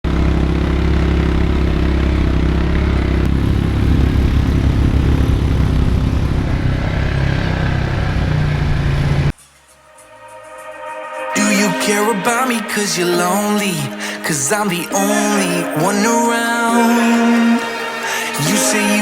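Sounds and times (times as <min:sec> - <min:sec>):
atv engine running: 0:00.0 - 0:09.3.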